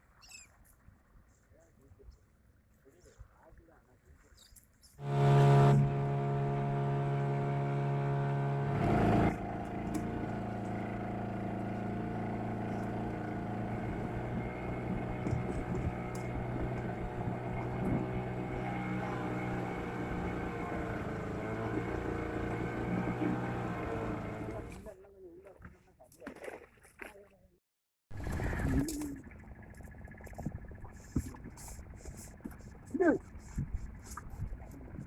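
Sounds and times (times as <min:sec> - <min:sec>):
boat motor running: 0:05.0 - 0:24.9.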